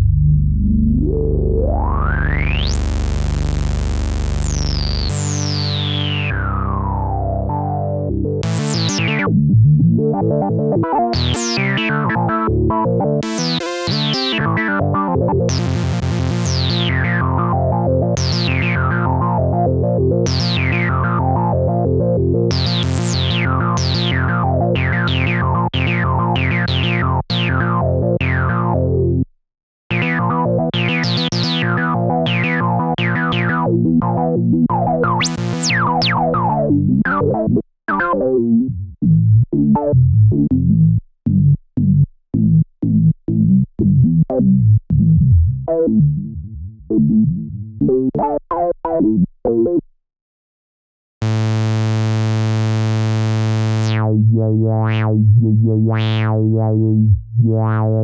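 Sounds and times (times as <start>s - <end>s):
analog synthesizer with filter sweeps: 0.0s - 28.4s, 29.9s - 38.3s, 51.2s - 58.0s.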